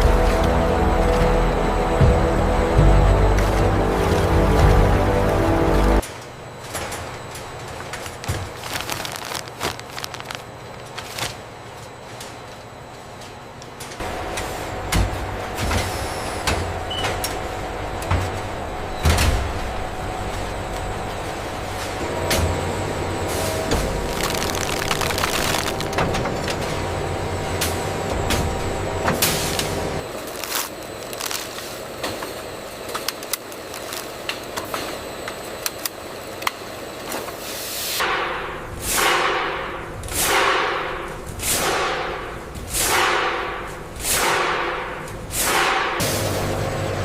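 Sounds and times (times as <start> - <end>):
machinery clattering rumble: 0.0 - 6.0, 13.9 - 30.1.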